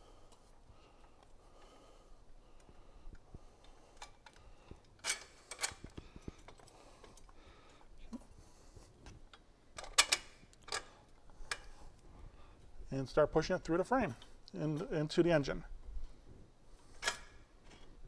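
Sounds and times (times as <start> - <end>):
metal parts clicking and knocking: 9.8 - 11.7.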